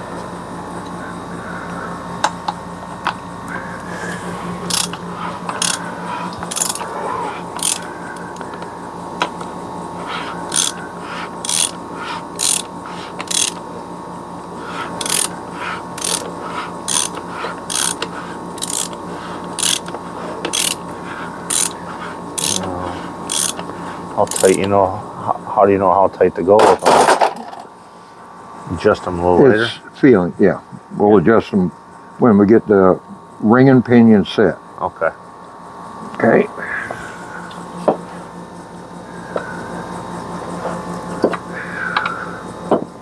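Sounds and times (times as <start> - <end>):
ratchet wrench clicking: 4.6 - 6.8, 7.5 - 8.6, 10.0 - 13.6, 14.7 - 20.8, 21.5 - 21.8, 22.4 - 22.6, 23.2 - 24.7.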